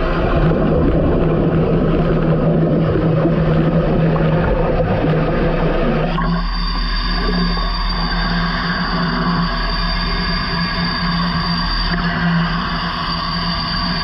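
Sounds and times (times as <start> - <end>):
rushing water and wind: 0.0 - 6.2
boat engine humming: 0.0 - 14.0.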